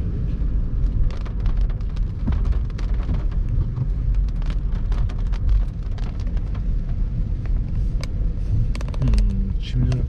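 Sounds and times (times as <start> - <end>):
rain ticking on car: 0.0 - 10.0.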